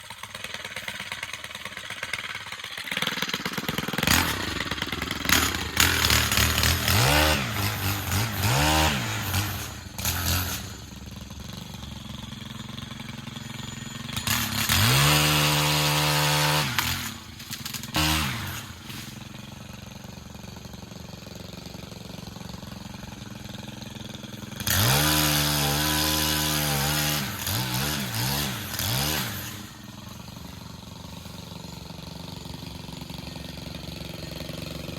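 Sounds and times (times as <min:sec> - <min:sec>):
pole saw motor revving: 0:00.0 - 0:34.9.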